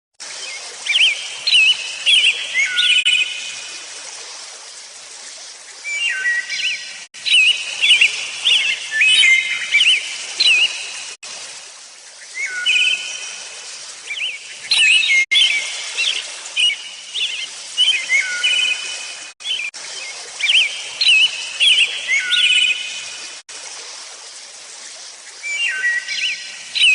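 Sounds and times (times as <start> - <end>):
steady outdoor hiss: 0.2 - 26.9
songbirds singing: 0.5 - 3.4, 5.7 - 11.1, 14.1 - 23.2, 25.4 - 26.9.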